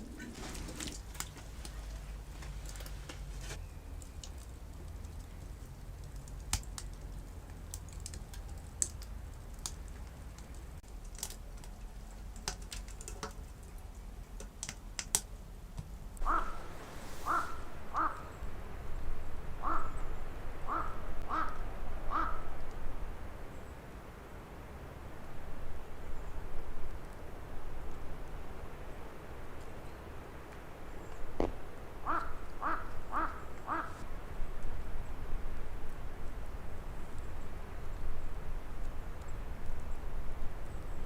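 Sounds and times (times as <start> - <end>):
sharp crackling clicks: 4.0 - 13.5, 14.4 - 15.3
crow cawing: 16.2 - 16.7, 17.3 - 18.3, 19.6 - 20.0, 20.6 - 22.5, 32.0 - 34.0.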